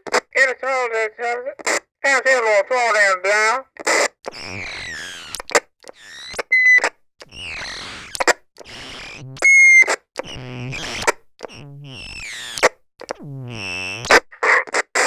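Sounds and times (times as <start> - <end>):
radio-filtered voice: 0.0 - 4.0
radio static: 0.0 - 12.7
squelch clicks: 4.2 - 13.2.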